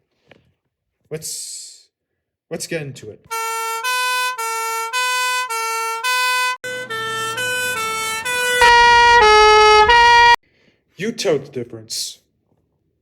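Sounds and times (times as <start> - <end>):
two-tone police siren: 3.3 - 10.4.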